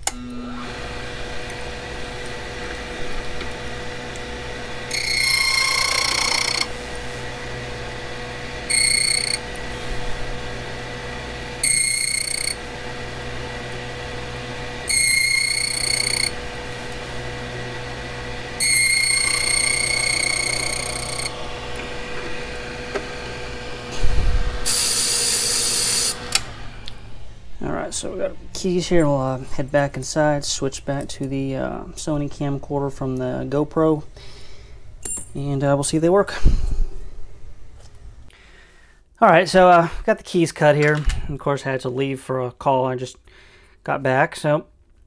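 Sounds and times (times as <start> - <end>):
key cutting machine running: 0.0 - 27.3
high-pitched grinding bursts: 0.5 - 26.8.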